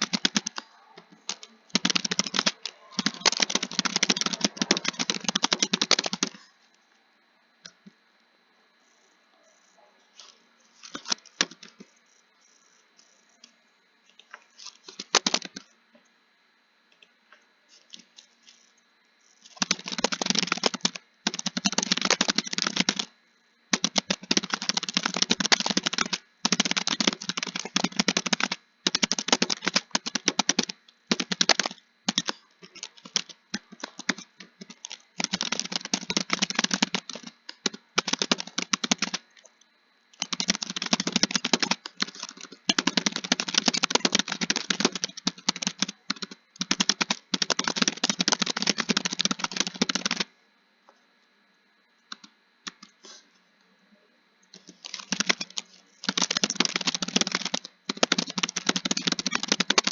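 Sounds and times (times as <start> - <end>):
keyboard typing: 0.0 - 6.5, 10.2 - 11.9, 14.3 - 15.7, 19.3 - 39.4, 40.2 - 50.3, 52.1 - 53.0, 54.5 - 59.9.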